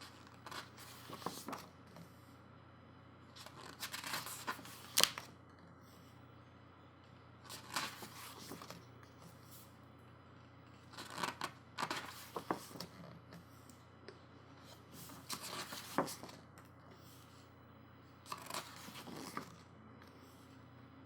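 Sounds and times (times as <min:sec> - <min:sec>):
book pages being turned: 0:00.3 - 0:01.7, 0:03.4 - 0:05.3, 0:07.5 - 0:09.6, 0:11.0 - 0:13.0, 0:14.6 - 0:16.4, 0:18.3 - 0:19.6.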